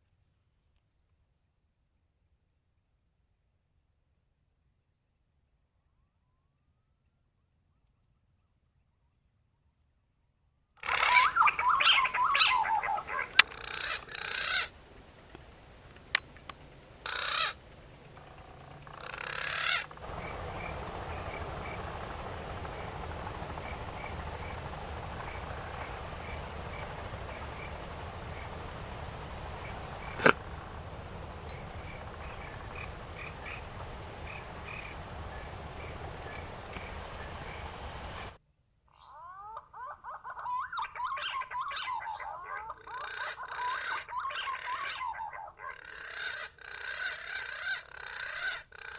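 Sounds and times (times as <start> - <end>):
high insect drone: 10.8 - 38.6, 41.0 - 48.9.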